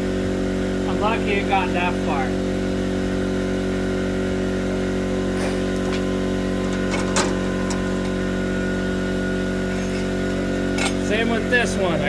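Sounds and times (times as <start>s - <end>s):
motor humming: 0.0s - 12.0s.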